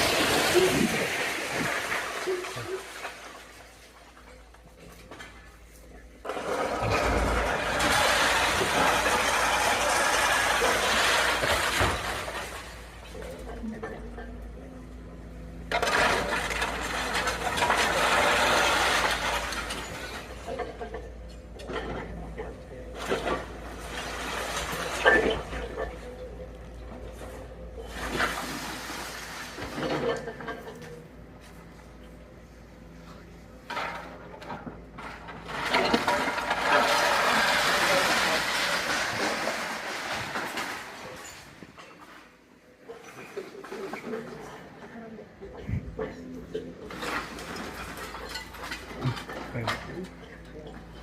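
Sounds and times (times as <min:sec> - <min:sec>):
concrete and rubble crashing down: 0:00.0 - 0:14.5, 0:15.1 - 0:31.1, 0:33.6 - 0:42.3, 0:45.5 - 0:51.0
crumbling masonry and falling debris: 0:00.0 - 0:51.0
demolition machine engine: 0:00.0 - 0:51.0.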